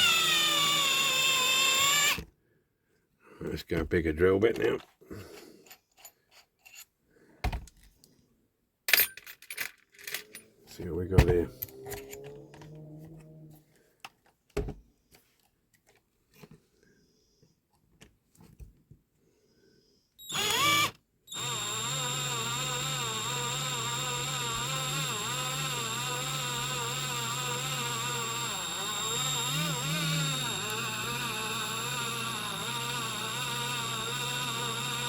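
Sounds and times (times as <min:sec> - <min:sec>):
electric drill running: 0:00.0 - 0:02.2, 0:20.2 - 0:35.0.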